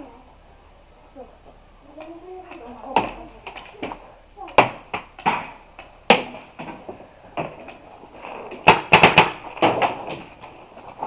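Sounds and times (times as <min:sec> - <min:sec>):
paintball markers firing: 0:08.6 - 0:09.9.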